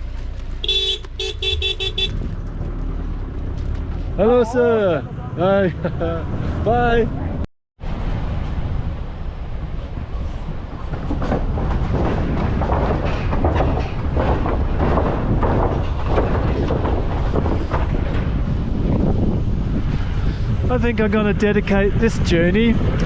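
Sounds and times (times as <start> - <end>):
truck engine and road rumble: 0.0 - 23.0
truck bed rattling and knocking: 9.6 - 19.8.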